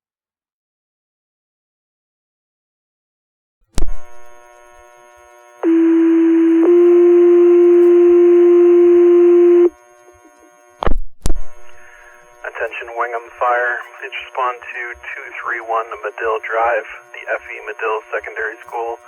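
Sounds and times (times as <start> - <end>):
two-tone page tones: 5.6 - 9.7.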